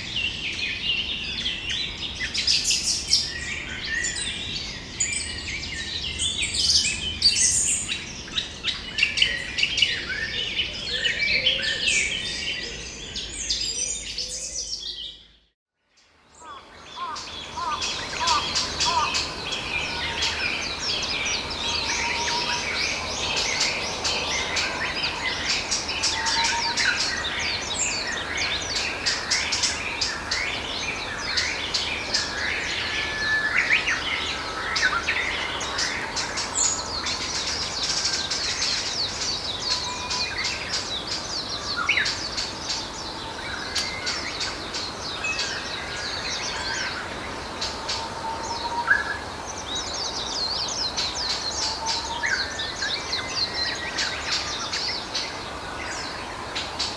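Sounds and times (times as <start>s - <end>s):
birds chirping and trilling: 0.0s - 15.4s, 16.4s - 56.9s
steady background hiss: 16.2s - 56.9s.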